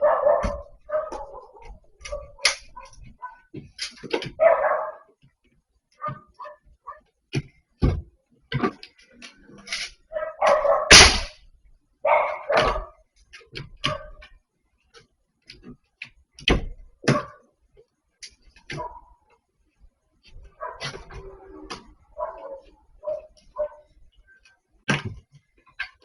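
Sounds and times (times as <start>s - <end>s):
dog barking: 0.0s - 3.5s, 4.3s - 5.2s, 6.0s - 7.1s, 10.1s - 11.1s, 12.0s - 13.0s, 13.9s - 14.2s, 17.0s - 17.4s, 18.7s - 19.2s, 20.6s - 21.0s, 22.1s - 23.9s.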